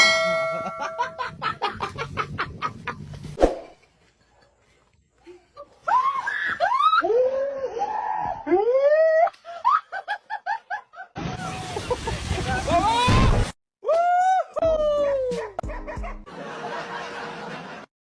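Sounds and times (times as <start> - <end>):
person shrieking with laughter: 5.6 - 10.0, 13.8 - 16.1.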